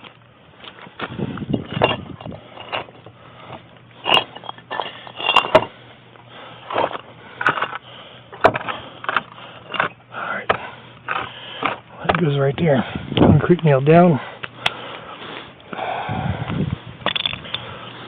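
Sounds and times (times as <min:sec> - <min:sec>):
knocks of wood and metal: 0:01.6 - 0:05.8, 0:06.7 - 0:12.3.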